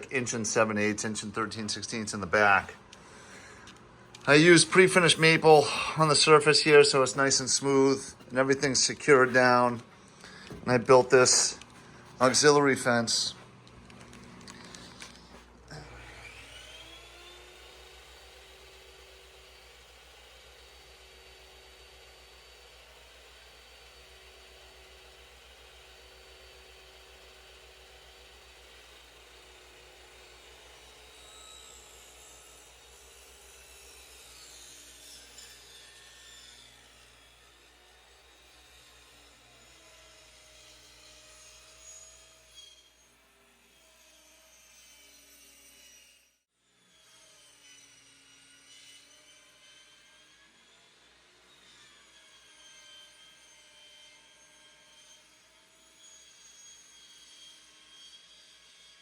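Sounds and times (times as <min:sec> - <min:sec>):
woodworking machine whine: 0:00.8 - 0:45.9.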